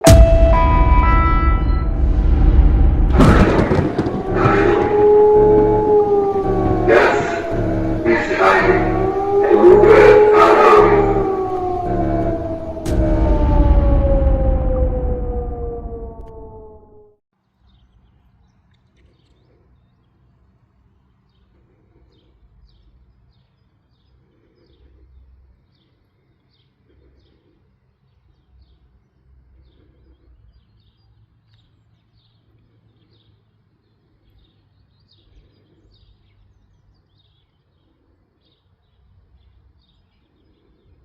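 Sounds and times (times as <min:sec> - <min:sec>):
faint low rumble: 0:00.0 - 0:17.1
small birds chirping: 0:21.0 - 0:41.0.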